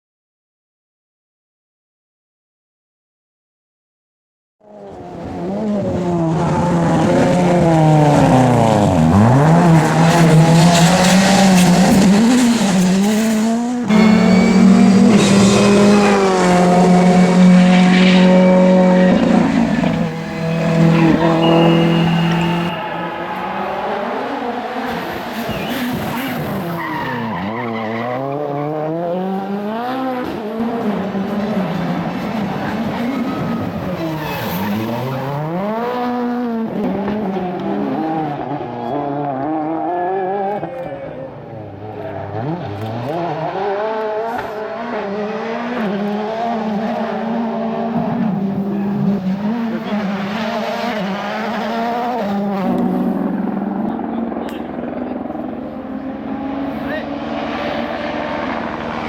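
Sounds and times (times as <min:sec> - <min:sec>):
rally car engine at speed: 0:04.6 - 0:59.0.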